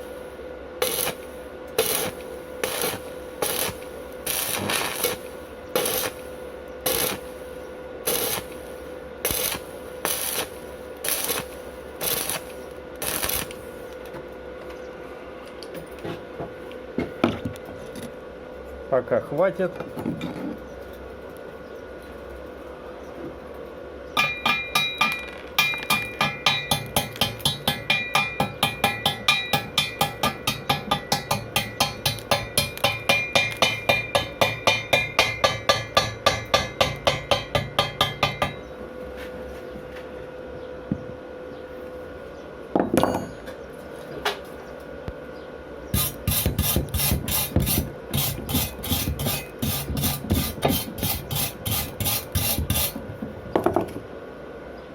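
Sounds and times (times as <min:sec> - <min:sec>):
hammer chipping slag off weld: 0:00.8 - 0:06.2, 0:24.2 - 0:38.6.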